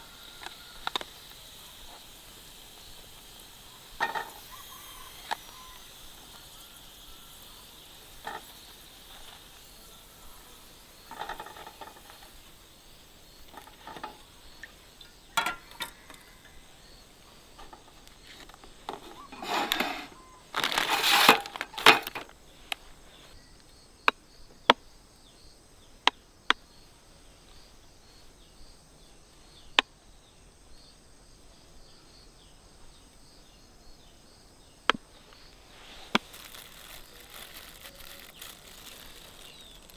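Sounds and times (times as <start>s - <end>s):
faint outdoor background: 0.0s - 39.9s
handling clicks and clinks: 11.0s - 12.5s, 13.4s - 14.4s, 15.4s - 16.6s, 17.5s - 22.4s, 36.0s - 39.9s
rustling or scraping: 11.0s - 12.5s, 13.3s - 14.7s, 15.4s - 23.4s, 35.1s - 39.9s.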